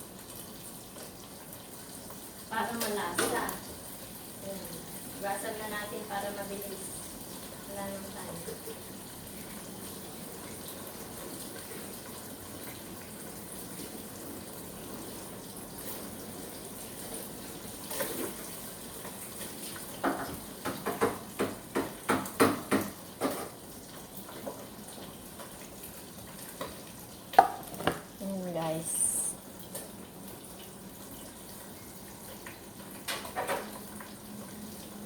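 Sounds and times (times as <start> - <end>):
water running from tap: 0.0 - 35.0
sharp knocks and clatters: 20.0 - 23.5.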